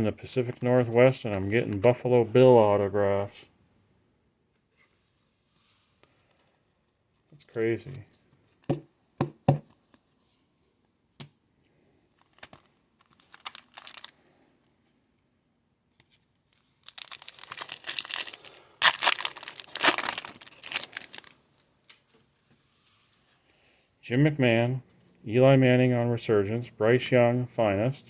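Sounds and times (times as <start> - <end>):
foil wrapper tearing and crinkling: 12.2 - 14.2, 16.6 - 21.4.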